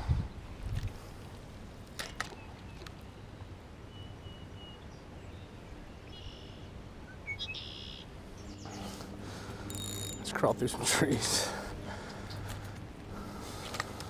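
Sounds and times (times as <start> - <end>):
faint high bird calls: 2.2 - 9.0.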